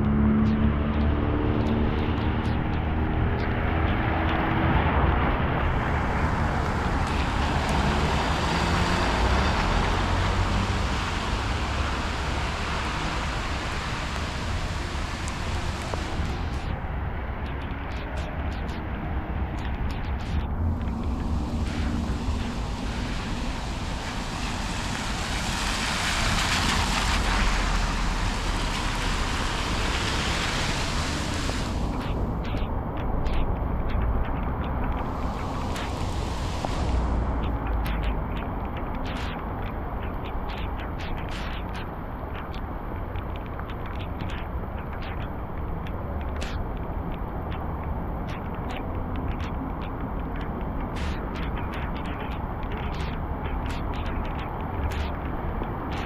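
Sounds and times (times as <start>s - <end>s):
tyres on wet road: 0.0s - 56.0s
vehicle engine hum: 0.0s - 56.0s
steady low rumble: 4.0s - 55.9s
rain hissing: 5.6s - 16.9s, 20.6s - 32.4s, 35.0s - 37.7s.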